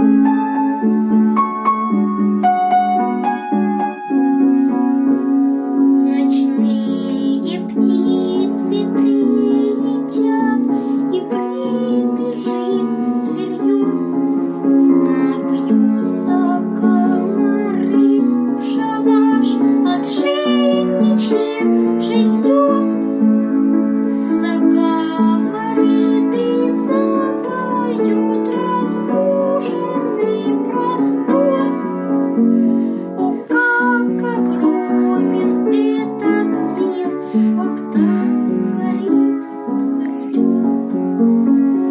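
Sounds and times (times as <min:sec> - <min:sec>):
piano accompaniment: 0:00.0 - 0:41.9
child singing: 0:06.0 - 0:23.1, 0:24.2 - 0:31.9, 0:33.2 - 0:41.0.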